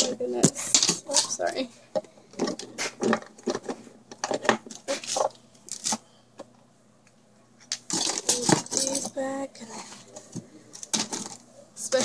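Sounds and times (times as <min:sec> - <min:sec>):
small items clicking and clattering: 0:00.0 - 0:01.6, 0:02.4 - 0:06.0, 0:07.6 - 0:09.2, 0:10.7 - 0:11.4.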